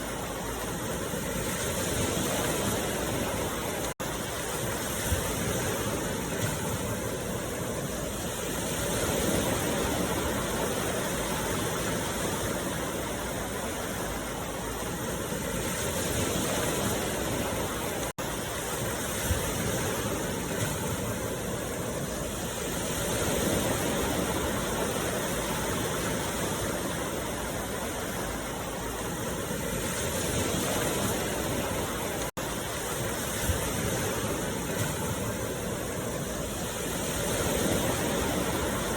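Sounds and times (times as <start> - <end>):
steady rushing noise: 0.0 - 38.9.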